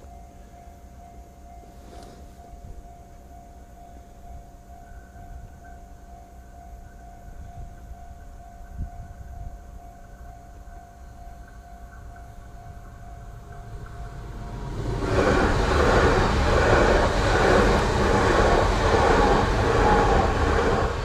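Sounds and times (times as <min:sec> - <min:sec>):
low rumble: 0:12.4 - 0:21.0.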